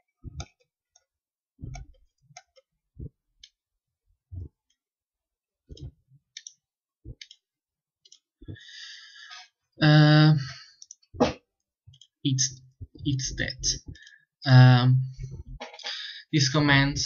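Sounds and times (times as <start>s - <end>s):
computer mouse clicking: 0.2s - 3.6s, 5.7s - 8.3s, 10.8s - 11.1s.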